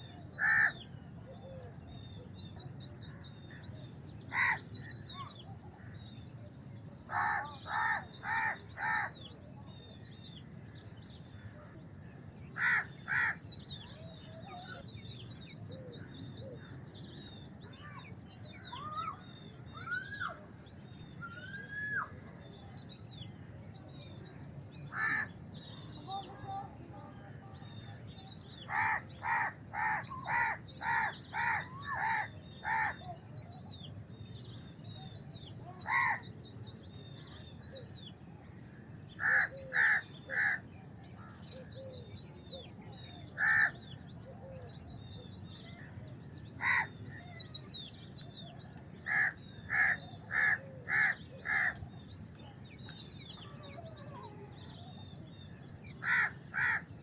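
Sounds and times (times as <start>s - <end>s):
small birds chirping: 0.0s - 57.0s
crows cawing: 0.4s - 0.8s, 4.3s - 4.7s, 7.1s - 9.1s, 12.6s - 13.4s, 24.9s - 25.3s, 28.7s - 33.0s, 35.9s - 36.2s, 39.2s - 40.6s, 43.4s - 43.8s, 46.6s - 46.9s, 49.1s - 51.8s, 56.0s - 56.8s.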